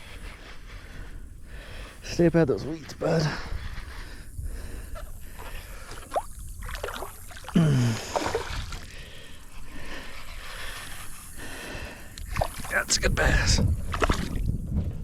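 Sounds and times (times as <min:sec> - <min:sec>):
faint water sounds: 0:02.8 - 0:14.6
person gasping and breathing: 0:07.5 - 0:09.2
person grunting: 0:07.6 - 0:08.1.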